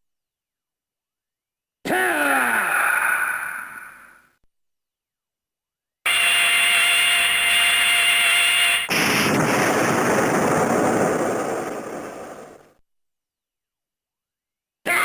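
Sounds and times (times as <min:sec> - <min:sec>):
rough rushing noise: 0:08.9 - 0:12.7.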